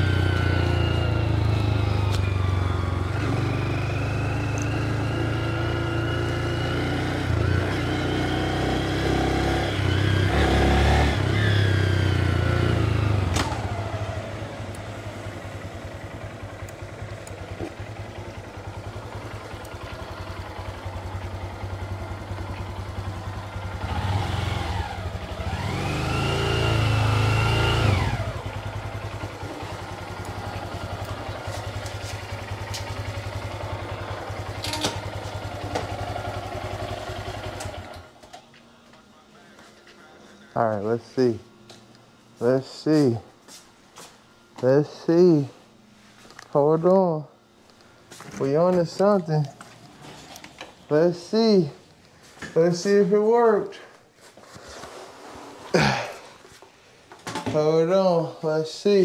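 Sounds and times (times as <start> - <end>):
motorcycle engine while riding: 0.0 - 38.5.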